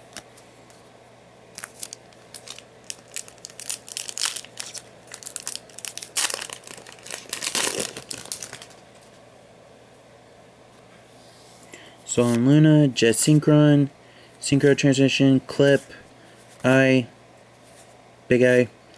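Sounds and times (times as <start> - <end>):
foil wrapper crinkling and tearing: 1.6 - 9.1.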